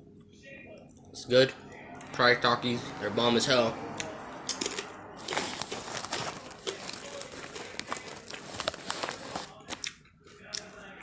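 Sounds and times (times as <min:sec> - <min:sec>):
snack bag crinkling: 0:04.5 - 0:10.8.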